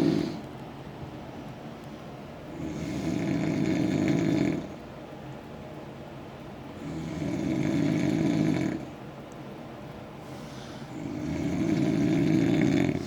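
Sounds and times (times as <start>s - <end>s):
loud coarse snoring: 0.0s - 0.4s, 2.5s - 4.7s, 6.8s - 8.8s, 10.9s - 13.0s
quiet breathing: 10.2s - 13.0s.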